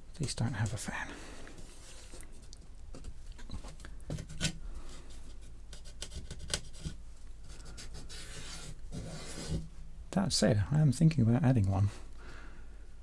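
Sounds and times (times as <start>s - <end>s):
scratchy rubbing on plastic case: 1.6s - 9.7s.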